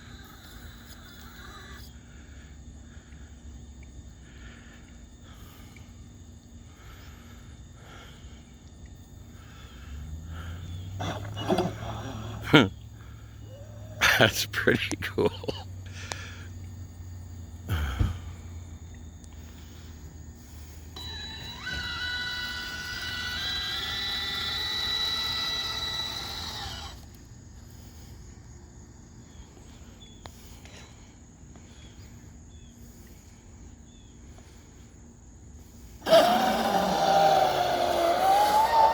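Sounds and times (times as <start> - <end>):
electric motor whining: 9.6 - 14.0, 20.6 - 27.2, 36.0 - 38.9.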